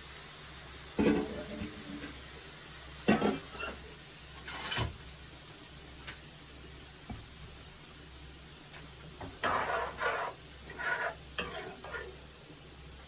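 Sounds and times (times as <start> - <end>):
utensil scraping pot: 3.1 - 3.8, 4.4 - 4.9, 9.4 - 12.2.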